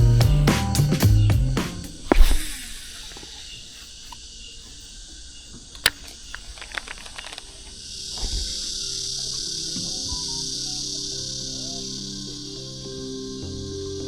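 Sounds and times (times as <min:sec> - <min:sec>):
high insect buzz: 0:00.2 - 0:14.0
sharp click: 0:02.1 - 0:03.3.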